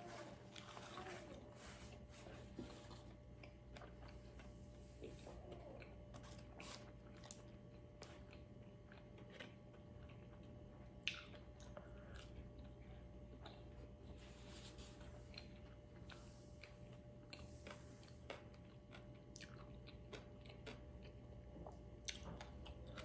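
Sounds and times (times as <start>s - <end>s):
person chewing: 0.4s - 23.0s.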